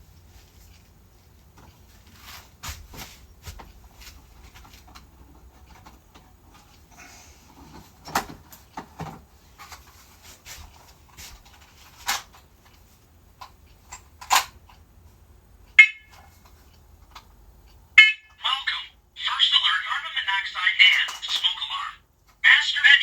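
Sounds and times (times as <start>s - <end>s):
alarm short beep: 15.8s - 16.2s, 18.0s - 18.4s.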